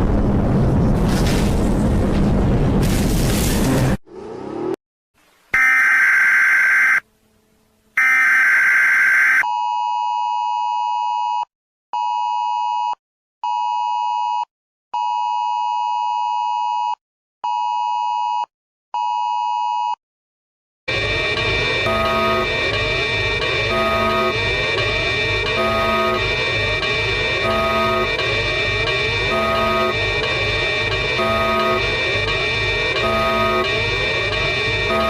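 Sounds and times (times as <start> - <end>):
two-tone attention signal: 5.6 - 7.0, 21.4 - 35.0
digital data-burst screeches: 20.9 - 35.0
music: 20.9 - 35.0.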